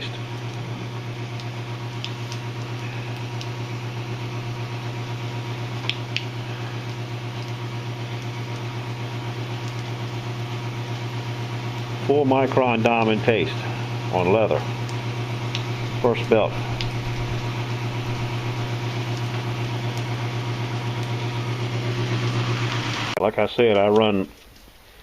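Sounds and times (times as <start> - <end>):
belt grinder running: 11.1 - 23.2.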